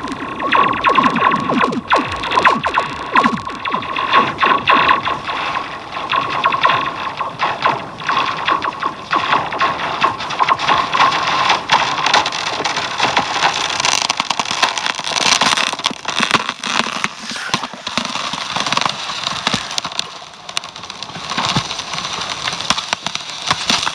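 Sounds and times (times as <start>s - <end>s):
ice clicking and crackling: 9.1s - 23.9s.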